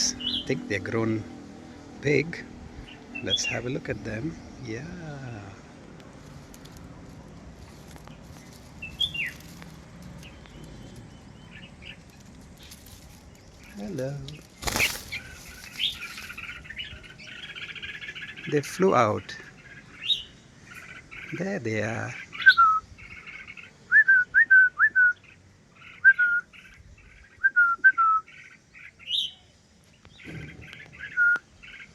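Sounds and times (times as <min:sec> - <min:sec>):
faint bird chirps: 0:08.0 - 0:31.9
bird whistled notes: 0:22.3 - 0:22.9, 0:23.9 - 0:25.3, 0:25.9 - 0:26.6, 0:27.4 - 0:28.4, 0:31.0 - 0:31.5.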